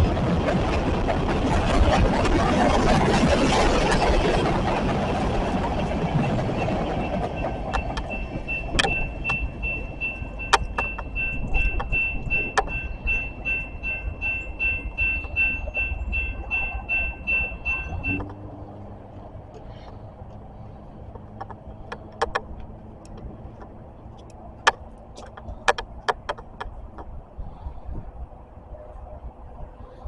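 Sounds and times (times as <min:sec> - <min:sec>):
train rumbling past: 0:00.0 - 0:25.7
steady high tone: 0:06.2 - 0:18.6.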